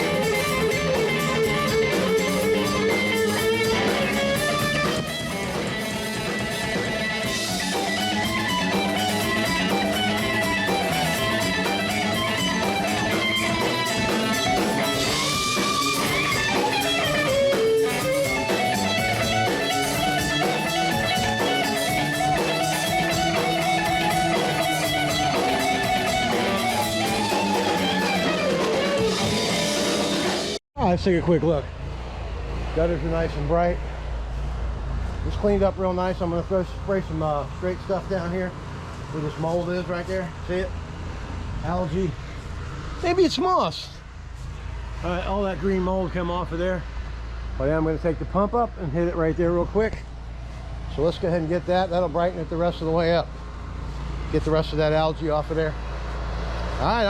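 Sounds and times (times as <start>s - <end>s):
guitar background music: 0.0s - 30.6s.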